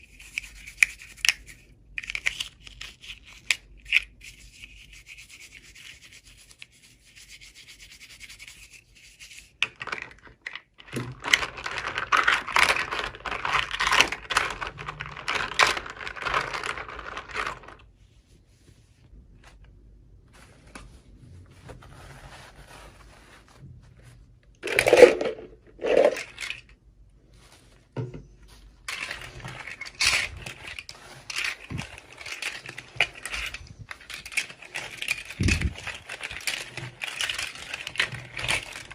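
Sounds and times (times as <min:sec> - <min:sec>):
hands scraping toy packaging: 0:11.1 - 0:17.8, 0:24.6 - 0:26.7, 0:28.8 - 0:38.9.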